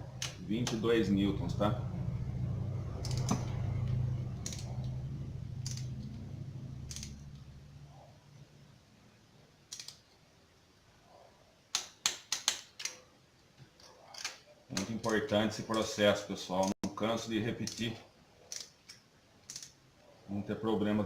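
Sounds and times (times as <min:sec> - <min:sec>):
low steady hum: 0:00.0 - 0:11.6
metallic ratchet clicks: 0:04.4 - 0:04.7, 0:05.6 - 0:06.0, 0:06.9 - 0:07.2, 0:19.5 - 0:19.8.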